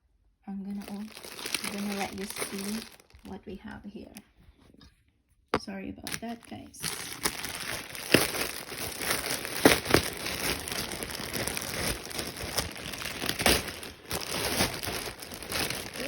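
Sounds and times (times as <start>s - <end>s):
packaging crinkling and tearing: 0.8s - 3.4s, 6.1s - 16.0s.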